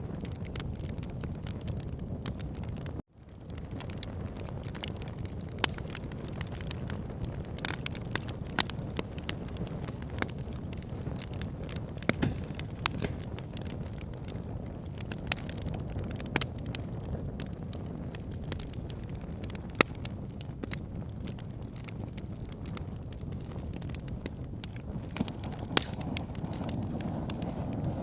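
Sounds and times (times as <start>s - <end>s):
logs crackling and popping: 0.0s - 28.0s
low rumble of flames: 0.0s - 28.0s.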